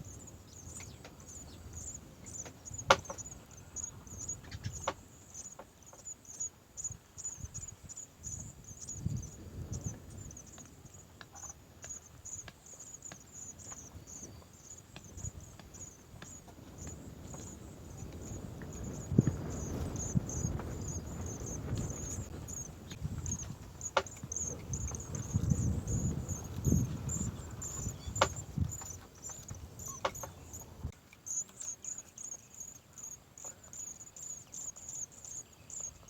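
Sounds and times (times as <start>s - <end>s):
insect chirping: 0.0s - 36.0s
light clicks and taps: 26.4s - 32.1s.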